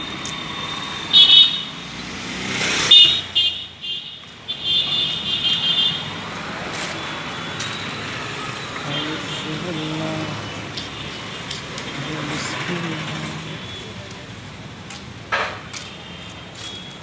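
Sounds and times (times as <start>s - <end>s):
brake squealing: 4.8s - 14.4s.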